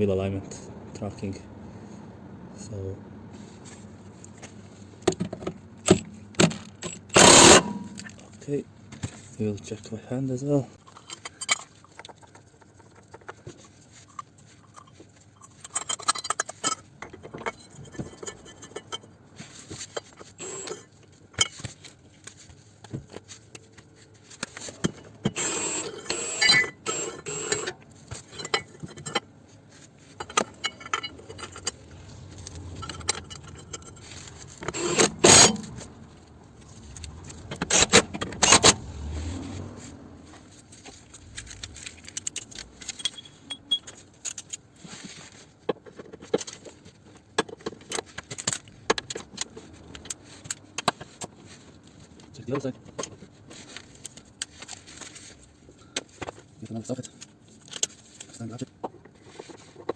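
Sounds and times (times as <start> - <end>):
metal hand tools clinking: 41.1 - 44.5.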